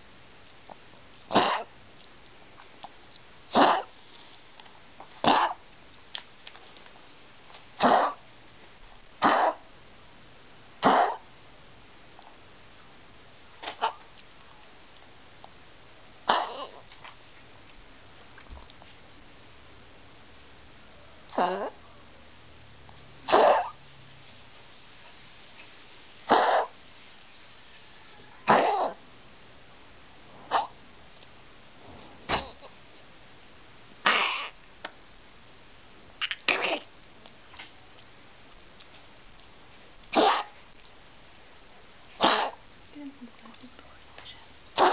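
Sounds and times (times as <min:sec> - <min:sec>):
pet coughing: 0:01.3 - 0:01.7, 0:03.5 - 0:03.9, 0:05.2 - 0:05.6, 0:07.8 - 0:08.2, 0:09.2 - 0:09.6, 0:10.8 - 0:11.2, 0:16.2 - 0:16.8, 0:21.3 - 0:21.8, 0:23.3 - 0:23.8, 0:26.3 - 0:26.7, 0:28.5 - 0:29.0, 0:32.3 - 0:32.7, 0:34.0 - 0:34.6, 0:36.4 - 0:36.9, 0:40.1 - 0:40.6, 0:42.2 - 0:42.6.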